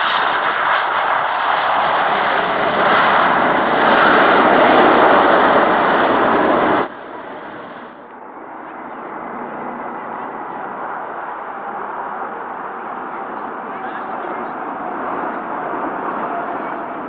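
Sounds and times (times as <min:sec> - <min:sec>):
aircraft engine noise: 0:00.0 - 0:17.0.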